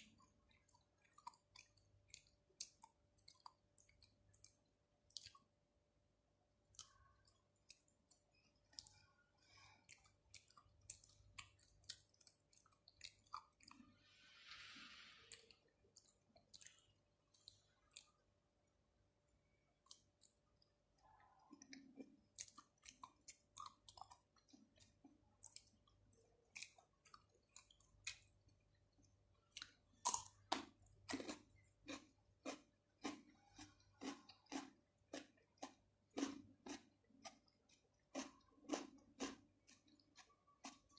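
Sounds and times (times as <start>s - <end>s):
close chewing: 0.0s - 5.5s, 6.7s - 13.9s, 19.8s - 40.9s
wet mouth clicks: 0.0s - 5.5s, 6.7s - 13.8s.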